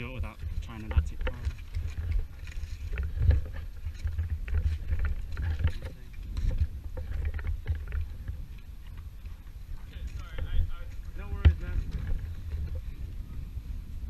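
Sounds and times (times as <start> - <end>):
wind rumble on microphone: 0.0 - 14.0.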